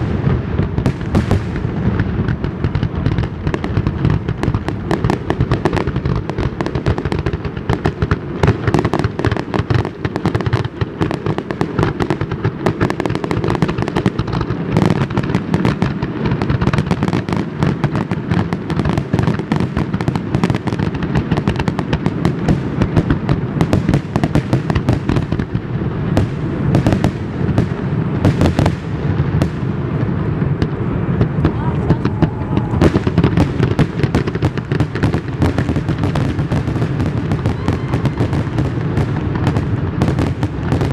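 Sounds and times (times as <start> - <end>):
fireworks bangs and crackles: 0.0 - 40.9.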